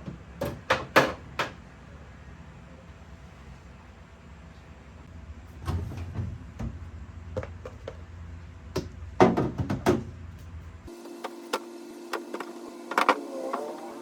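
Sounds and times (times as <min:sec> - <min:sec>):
refrigerator low hum: 0:00.0 - 0:14.0
food containers knocking on shelves: 0:08.8 - 0:10.2.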